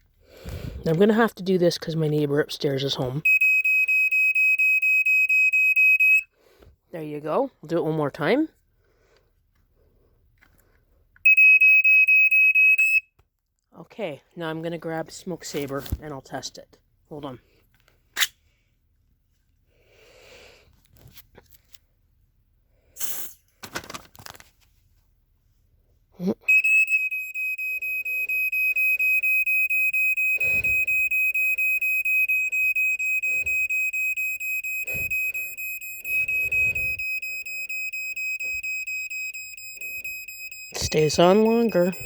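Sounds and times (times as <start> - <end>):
smoke alarm high-pitched tone: 3.2 - 6.3, 11.3 - 13.1, 26.5 - 42.0.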